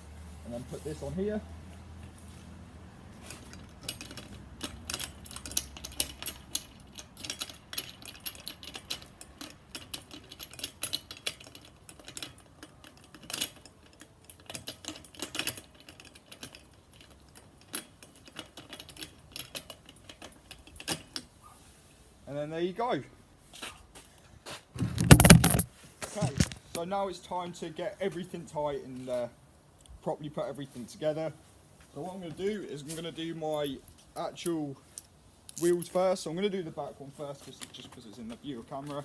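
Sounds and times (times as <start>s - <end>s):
metallic clicks of bike parts: 3.2s - 21.4s, 34.0s - 36.0s.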